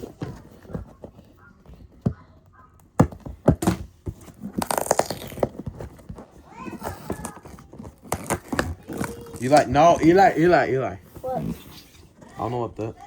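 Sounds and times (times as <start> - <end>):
cardboard box clicks and knocks: 3.0 - 9.6
packaging tearing scrape: 4.4 - 5.6.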